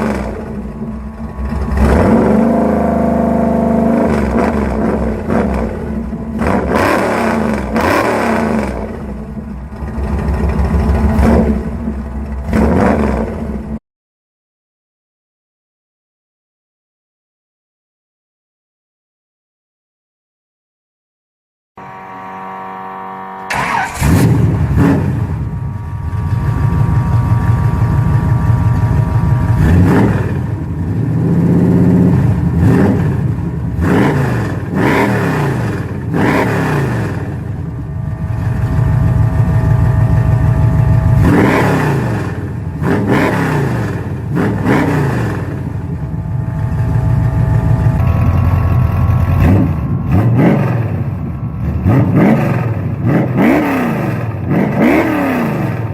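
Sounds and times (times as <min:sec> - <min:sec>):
car engine idling and revving: 0:00.0 - 0:13.8, 0:21.8 - 0:55.9
engine starting: 0:23.4 - 0:25.2.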